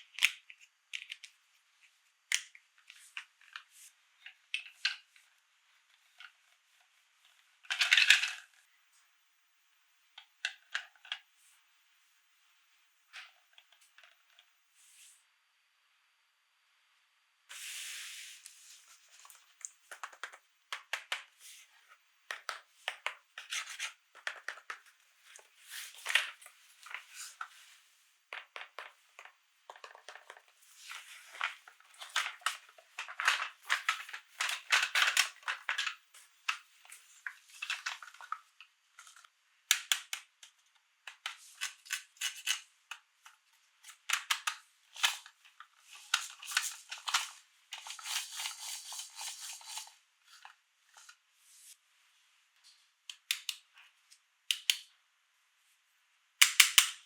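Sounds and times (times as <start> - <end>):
toy packaging crinkling: 28.4 - 38.4.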